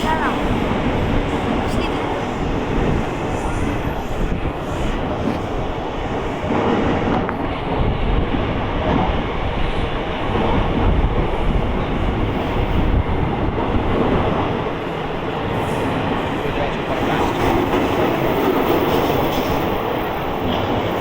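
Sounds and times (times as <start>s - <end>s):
train wheels rumbling on track: 0.0s - 21.0s.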